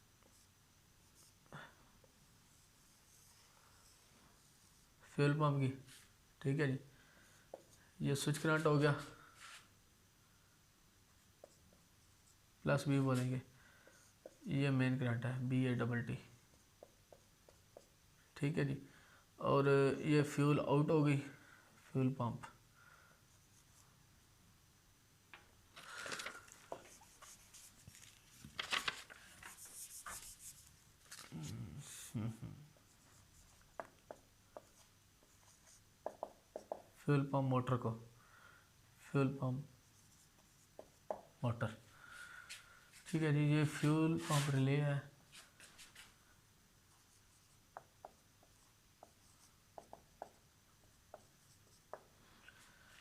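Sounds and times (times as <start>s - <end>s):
faint rubbing: 25.8s - 32.2s, 42.0s - 46.2s
pen scratching on paper: 32.8s - 37.0s, 46.9s - 52.0s.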